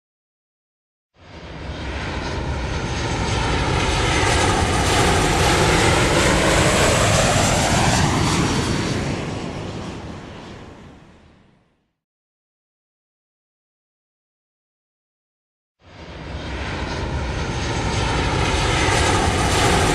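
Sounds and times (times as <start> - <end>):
airliner flying past: 1.2 - 11.9, 15.8 - 19.9.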